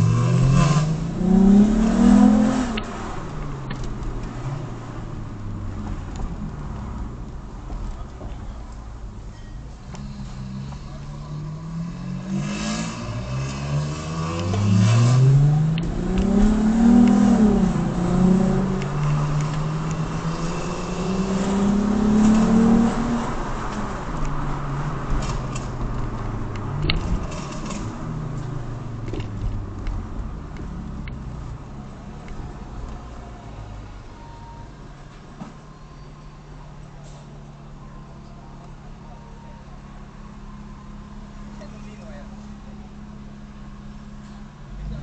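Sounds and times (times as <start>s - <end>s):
car engine accelerating hard: 0.0s - 8.1s, 9.8s - 33.8s
exhaust pops and crackles: 23.7s - 33.0s.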